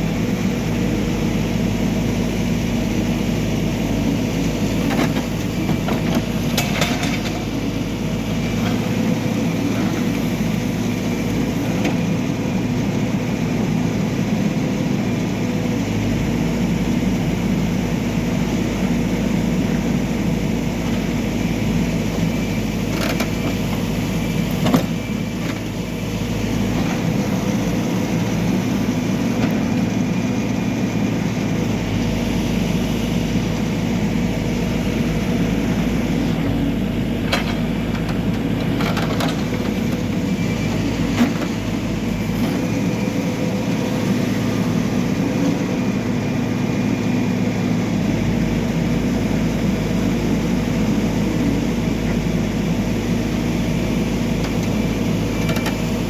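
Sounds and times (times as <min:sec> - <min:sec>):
diesel engine running: 0:00.0 - 0:56.0.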